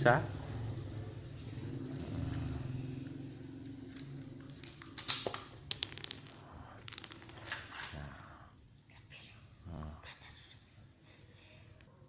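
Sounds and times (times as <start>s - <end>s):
plastic pistol parts clicking: 4.5s - 7.9s.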